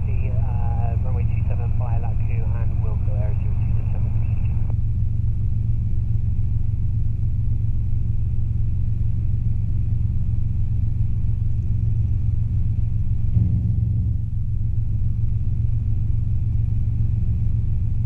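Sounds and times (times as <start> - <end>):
helicopter engine and rotor drone: 0.0 - 13.4.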